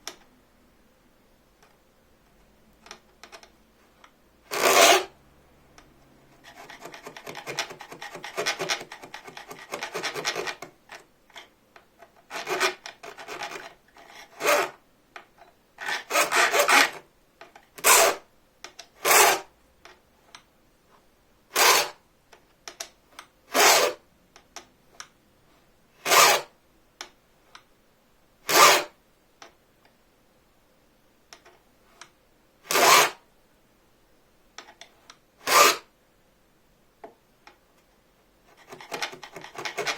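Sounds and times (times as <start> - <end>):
file cutting saw blade: 4.5 - 5.1, 14.2 - 14.8, 15.8 - 17.0, 17.8 - 18.2, 19.0 - 19.5, 21.6 - 22.0, 23.5 - 24.0, 26.0 - 26.5, 28.5 - 29.0, 32.7 - 33.2, 35.4 - 35.9.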